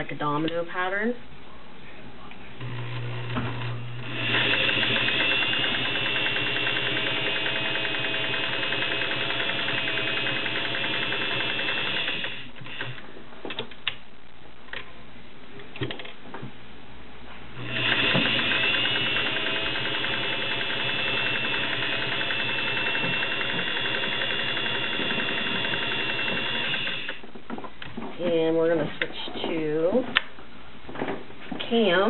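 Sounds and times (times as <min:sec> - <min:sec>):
sewing machine stitching: 0:02.6 - 0:13.0, 0:17.6 - 0:27.2.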